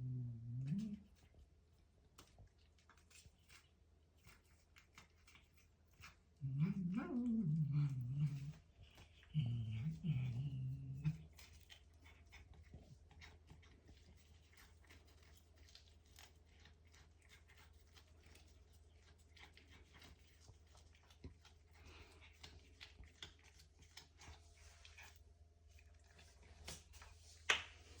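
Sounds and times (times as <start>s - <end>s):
low steady hum: 0.0s - 28.0s
cat chewing crunchy clicks: 11.2s - 25.1s.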